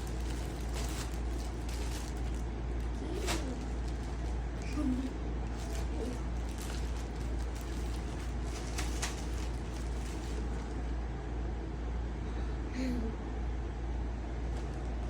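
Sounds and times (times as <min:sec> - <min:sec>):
plastic packaging rustling: 0:00.0 - 0:10.9
low background rumble: 0:00.0 - 0:15.0.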